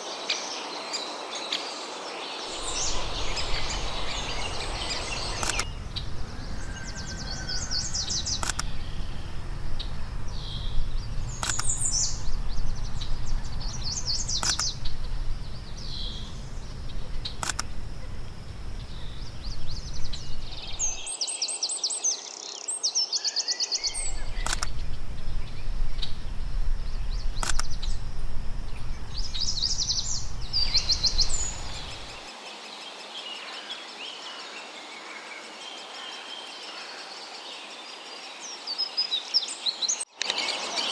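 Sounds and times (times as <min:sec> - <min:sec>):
nestlings chattering: 0:02.4 - 0:05.7, 0:28.8 - 0:32.3
wind rumble: 0:02.5 - 0:21.1, 0:23.8 - 0:32.3
faint click: 0:02.6 - 0:05.7, 0:08.4 - 0:08.7, 0:11.4 - 0:11.8, 0:14.4 - 0:14.8, 0:17.3 - 0:17.7, 0:24.4 - 0:24.9, 0:27.3 - 0:28.0, 0:40.2 - 0:40.5.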